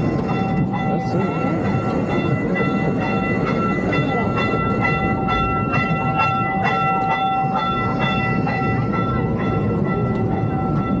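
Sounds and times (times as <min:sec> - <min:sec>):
ride wheels clacking over rail joints: 0:00.0 - 0:11.0
steady rumble: 0:00.0 - 0:11.0.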